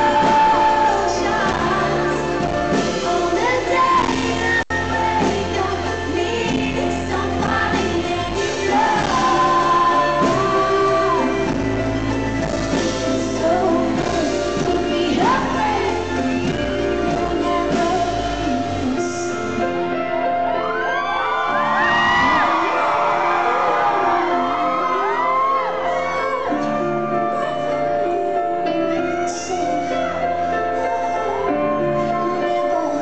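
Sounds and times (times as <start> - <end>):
live band backing: 0.0 - 33.0
woman singing: 0.0 - 33.0.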